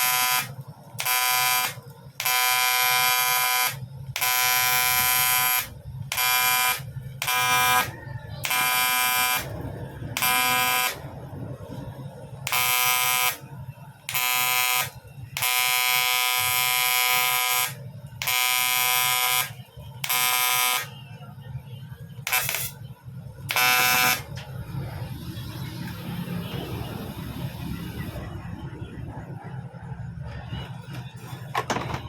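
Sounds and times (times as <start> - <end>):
welding arc buzzing: 0.0 - 11.2, 12.5 - 13.5, 14.1 - 20.9, 22.3 - 22.8, 23.4 - 24.4
low rumble: 26.8 - 31.2.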